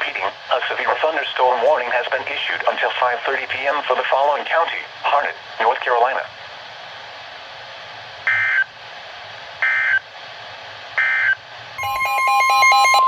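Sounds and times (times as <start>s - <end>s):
rapid electronic beeping: 11.8s - 13.0s
steady alarm tone: 11.8s - 13.0s.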